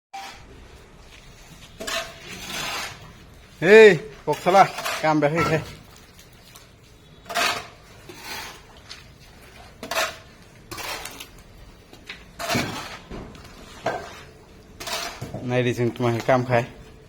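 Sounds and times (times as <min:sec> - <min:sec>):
metal hand tools scraping and clinking: 0:01.7 - 0:03.2, 0:04.3 - 0:05.8, 0:14.8 - 0:15.3.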